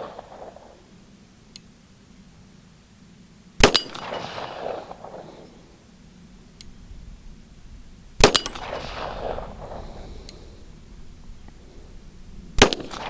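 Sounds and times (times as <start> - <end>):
pistol shots with echo: 0.0 - 1.1, 3.6 - 5.9, 8.2 - 10.8, 12.5 - 13.0.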